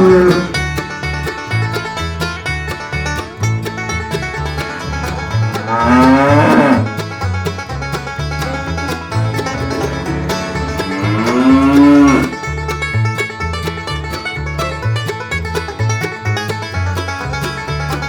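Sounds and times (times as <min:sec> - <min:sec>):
cow mooing: 0:00.0 - 0:00.5, 0:05.6 - 0:06.9, 0:09.6 - 0:12.3
banjo bluegrass tune: 0:00.0 - 0:18.0.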